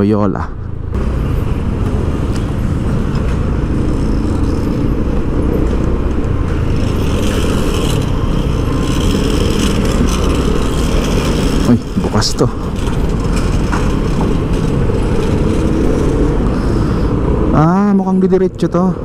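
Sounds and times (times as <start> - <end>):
vehicle engine and road noise: 0.0 - 19.0.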